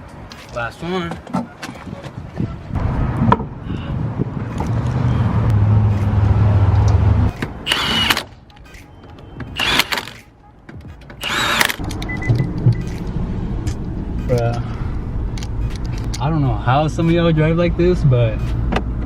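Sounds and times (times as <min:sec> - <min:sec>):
pneumatic impact wrench whining: 0:07.3 - 0:08.9, 0:09.5 - 0:10.3, 0:11.2 - 0:11.8.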